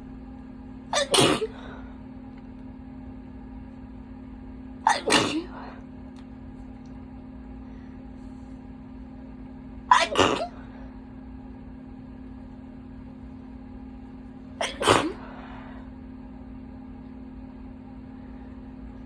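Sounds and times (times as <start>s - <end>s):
steady low hum: 0.0s - 19.0s
person sneezing: 1.0s - 1.9s, 4.9s - 5.8s, 9.9s - 10.8s, 14.6s - 15.8s.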